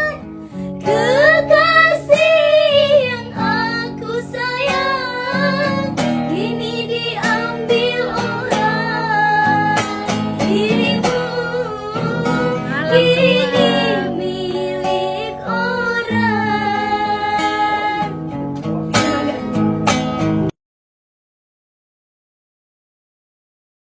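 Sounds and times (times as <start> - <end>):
guitar accompaniment: 0.0 - 20.6
person singing rock ballad: 0.9 - 18.1.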